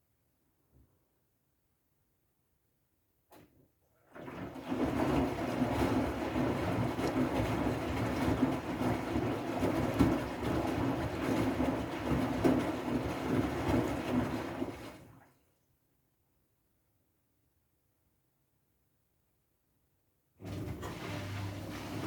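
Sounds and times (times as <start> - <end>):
washing machine churning: 4.0 - 15.3, 20.4 - 22.0.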